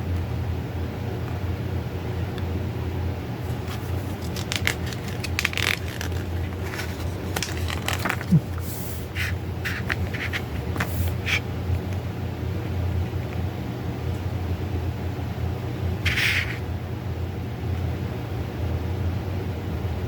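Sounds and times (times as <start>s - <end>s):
steady low hum: 0.0s - 20.0s
paper pages being turned: 3.4s - 11.4s, 16.1s - 16.6s.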